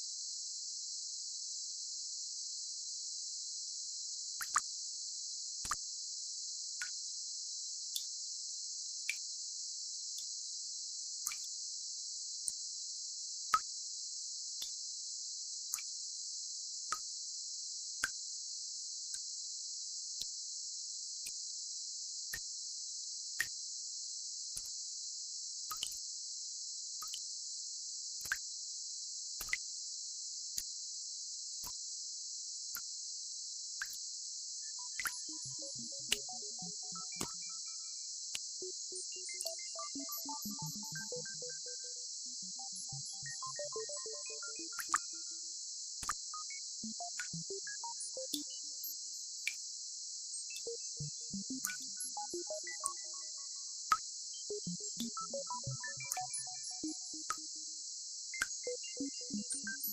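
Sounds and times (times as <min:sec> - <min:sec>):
soft drip-like plops: 0:04.4 - 0:04.6, 0:11.3 - 0:11.5, 0:25.7 - 0:26.0, 0:27.0 - 0:27.3, 0:28.2 - 0:28.4, 0:29.4 - 0:29.6, 0:35.0 - 0:35.4.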